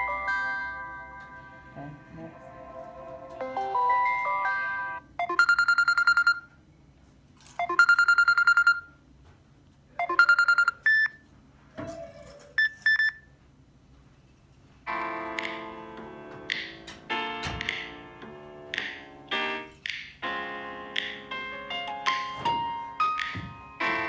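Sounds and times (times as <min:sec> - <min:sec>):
melodic ringtone: 0:00.0 - 0:06.5, 0:07.6 - 0:08.9, 0:10.0 - 0:11.1.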